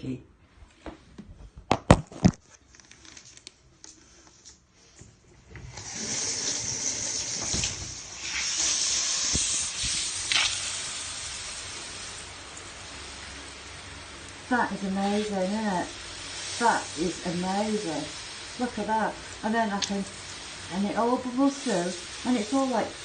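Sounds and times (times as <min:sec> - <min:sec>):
shower spray hissing: 0:05.7 - 0:23.0.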